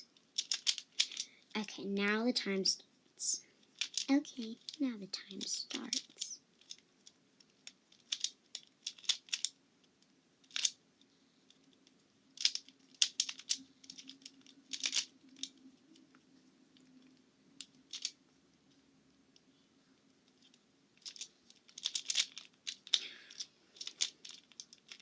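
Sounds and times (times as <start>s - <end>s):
faint steady hum: 0.0s - 25.0s
puzzle cube clicking: 0.4s - 1.3s, 3.8s - 6.8s, 7.9s - 9.6s, 10.4s - 10.8s, 12.4s - 15.6s, 17.6s - 18.2s, 20.4s - 25.0s.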